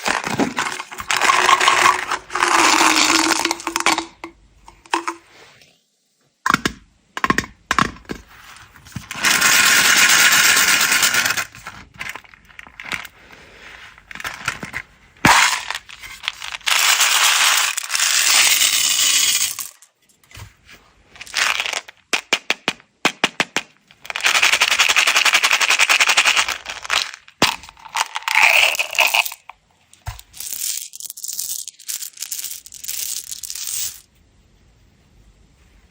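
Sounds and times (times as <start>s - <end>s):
candies and containers clicking: 0.0s - 5.2s, 9.0s - 19.9s, 21.2s - 34.1s
candies pouring and rattling: 0.0s - 5.2s, 8.6s - 19.9s, 21.1s - 22.4s, 23.9s - 34.1s.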